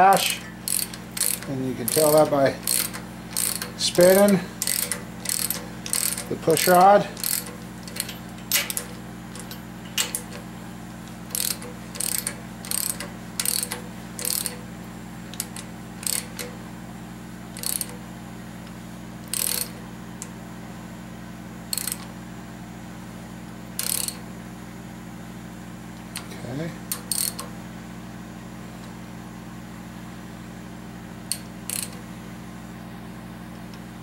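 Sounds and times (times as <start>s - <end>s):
steady low hum: 0.0s - 34.0s
ratchet wrench clicking: 0.1s - 10.4s, 11.1s - 14.7s, 15.3s - 16.6s, 17.5s - 18.0s, 19.2s - 20.3s, 21.7s - 22.1s, 23.8s - 24.2s, 26.9s - 27.5s, 31.3s - 32.0s.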